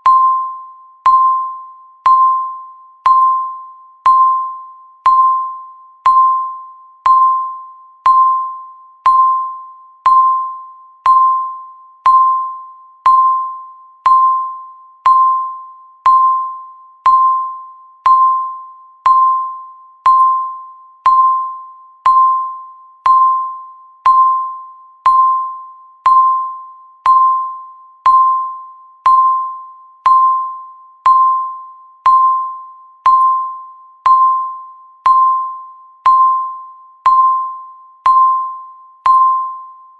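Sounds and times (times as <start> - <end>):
timer ticking: 1.0 - 12.5, 19.1 - 24.5, 31.1 - 39.5.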